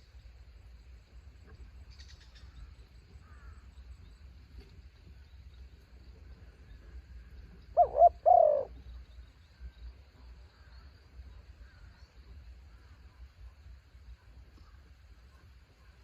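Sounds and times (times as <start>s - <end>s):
dove cooing: 7.7s - 8.8s.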